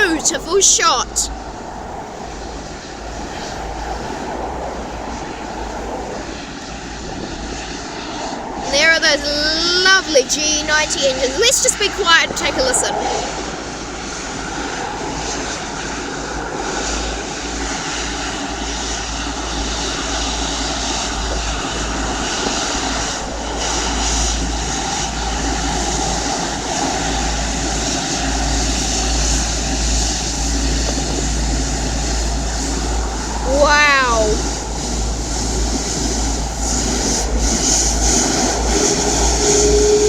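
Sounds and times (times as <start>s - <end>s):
jet engines running: 0.0s - 40.0s.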